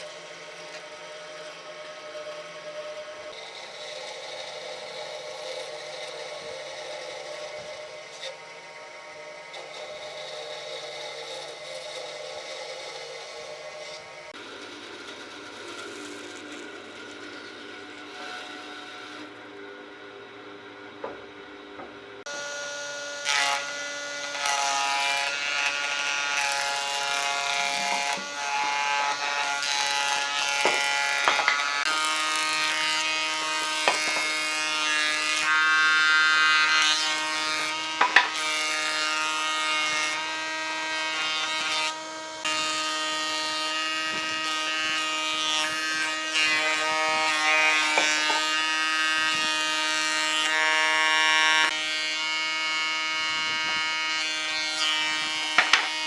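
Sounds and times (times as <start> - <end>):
power tool motor whining: 21.8 - 56.0.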